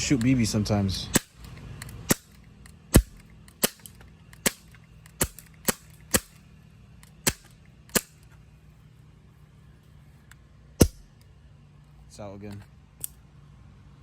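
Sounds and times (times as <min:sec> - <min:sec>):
airsoft pistol shots: 0:02.9 - 0:06.4, 0:07.2 - 0:08.2, 0:10.8 - 0:11.1.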